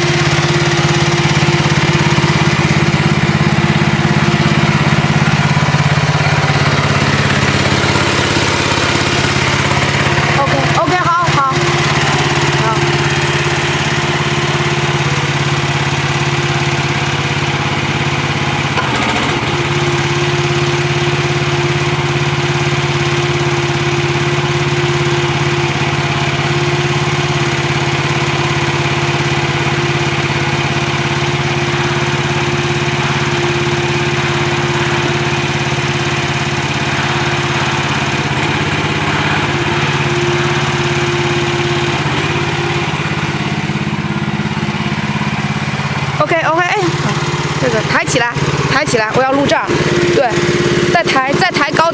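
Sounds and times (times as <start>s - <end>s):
small gasoline engine running: 0.0s - 51.9s.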